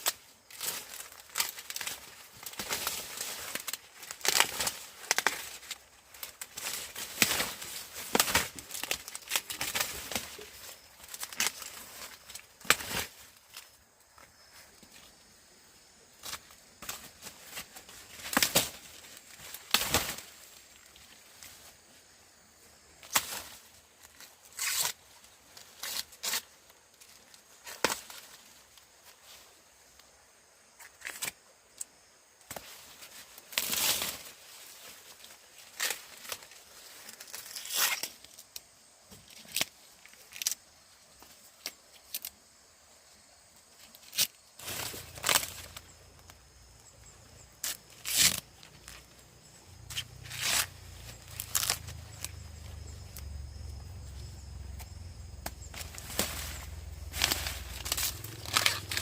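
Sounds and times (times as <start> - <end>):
corn ears snapping off stalks: 0.0 - 13.8, 16.2 - 21.1, 23.0 - 25.0, 27.2 - 28.5, 30.8 - 34.4, 35.6 - 40.6, 43.9 - 46.4, 47.5 - 49.2, 49.8 - 52.5, 54.7 - 59.0
husks and leaves rustling: 0.0 - 59.0.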